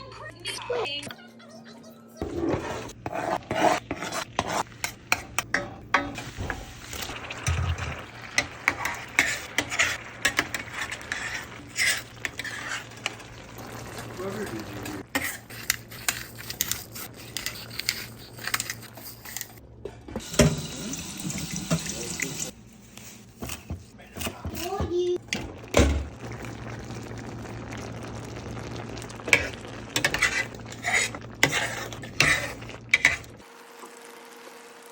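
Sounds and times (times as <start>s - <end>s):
scraping swishes in pan: 2.2s - 7.6s, 8.4s - 13.3s, 29.3s - 33.4s.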